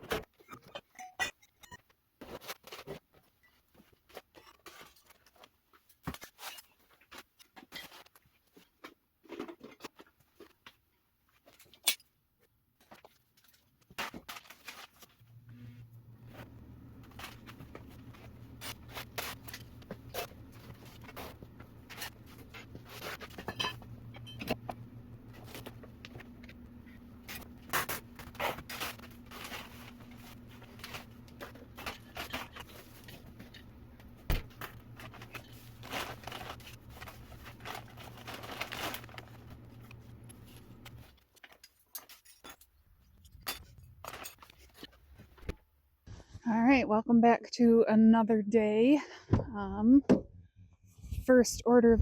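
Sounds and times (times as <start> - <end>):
objects being handled: 0.0 - 46.4
low electrical hum: 14.3 - 52.0.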